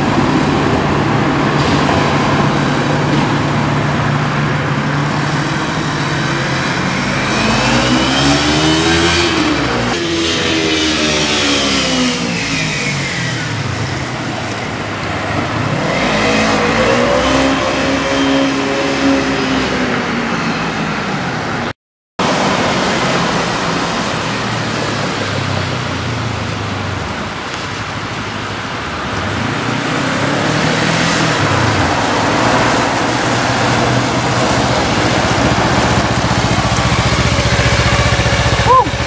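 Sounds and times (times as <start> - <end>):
motorcycle engine accelerating: 0.0 - 20.1, 29.2 - 39.0
wind and road noise: 0.0 - 39.0.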